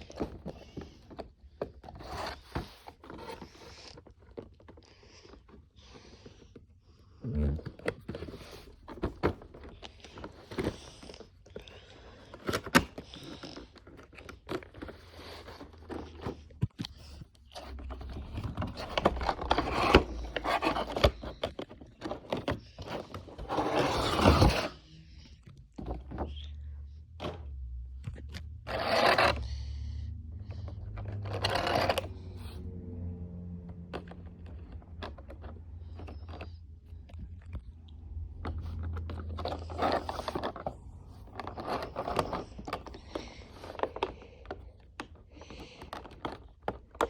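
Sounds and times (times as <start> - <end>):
packaging scraping and rustling: 0.0 - 5.8, 7.6 - 25.0, 28.6 - 29.5, 30.6 - 32.5, 38.4 - 47.0.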